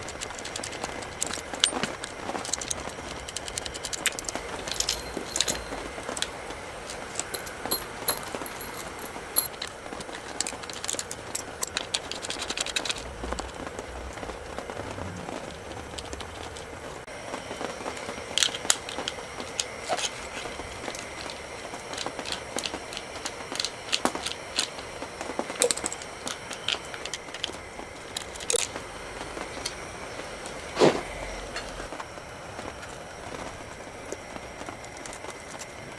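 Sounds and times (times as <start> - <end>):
metal tools clinking: 0.0 - 13.0, 25.5 - 28.8
rapid ticks: 0.0 - 17.1.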